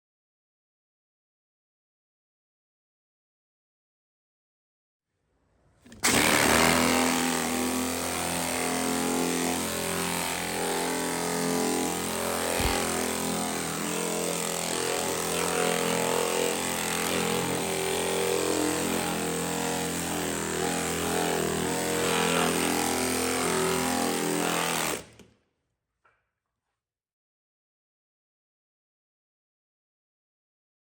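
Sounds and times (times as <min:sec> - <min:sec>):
motor-driven machine running: 0:09.7 - 0:19.8.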